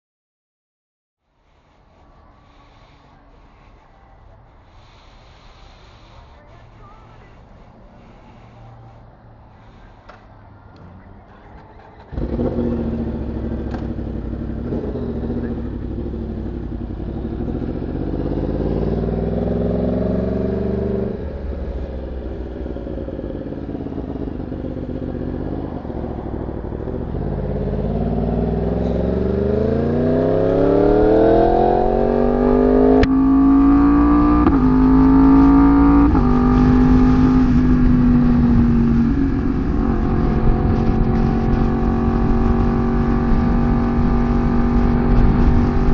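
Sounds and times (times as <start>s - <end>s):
motorcycle engine accelerating: 11.6s - 45.9s.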